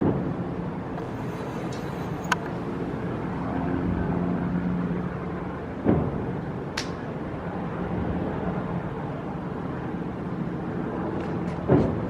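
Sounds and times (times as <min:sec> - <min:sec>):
low outdoor rumble: 0:00.0 - 0:12.0
faint hum: 0:01.0 - 0:05.8
sharp crack: 0:06.8 - 0:07.1.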